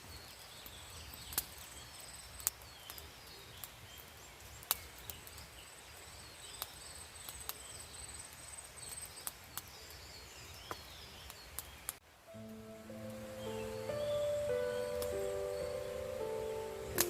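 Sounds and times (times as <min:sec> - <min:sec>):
faint chirps: 0:06.2 - 0:17.0
music: 0:12.3 - 0:17.0.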